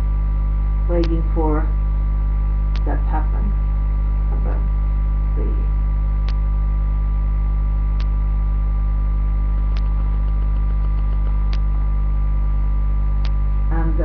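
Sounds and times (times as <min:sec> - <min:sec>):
electrical mains hum: 0:00.0 - 0:14.0
faint sharp tick: 0:06.2 - 0:06.4, 0:08.0 - 0:08.2, 0:09.6 - 0:11.7.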